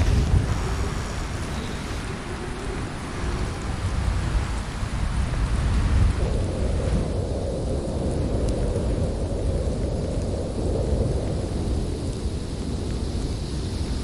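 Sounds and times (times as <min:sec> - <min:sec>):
hiss of blowing snow: 0:00.0 - 0:07.0
wind gusting on microphone: 0:00.0 - 0:14.0.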